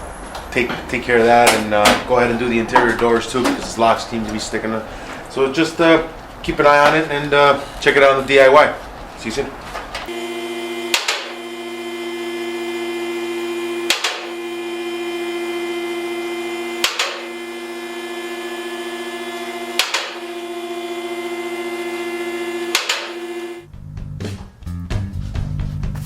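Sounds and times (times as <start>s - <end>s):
sharp percussive hits: 10.9s - 11.4s, 13.8s - 14.4s, 16.8s - 17.3s, 19.8s - 20.2s, 22.7s - 23.3s.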